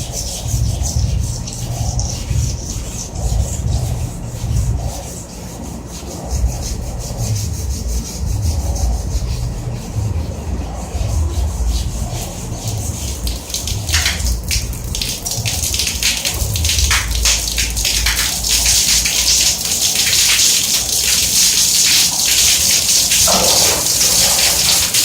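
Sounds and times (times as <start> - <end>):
sharp crackling ticks: 12.1 - 25.0.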